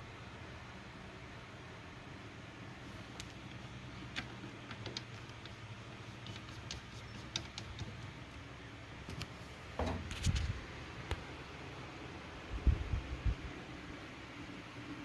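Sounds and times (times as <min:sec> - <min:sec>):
steady low hum: 0:00.0 - 0:15.0
rustling knock: 0:09.8 - 0:10.4.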